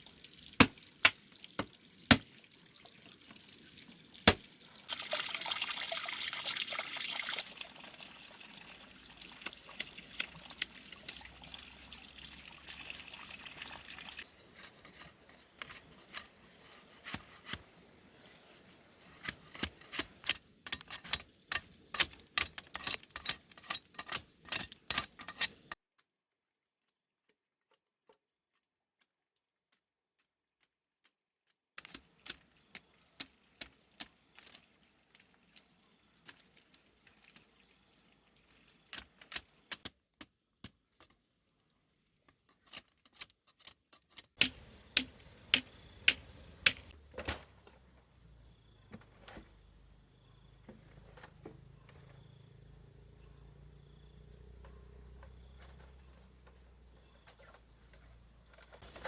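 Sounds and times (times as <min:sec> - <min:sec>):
water pouring: 0:00.0 - 0:14.3.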